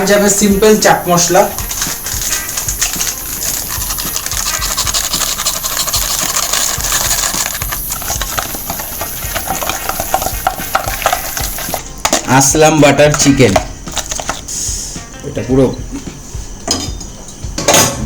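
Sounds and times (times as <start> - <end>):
spoon scraping in steel bowl: 1.4 - 11.8
metal clinks: 1.6 - 11.8.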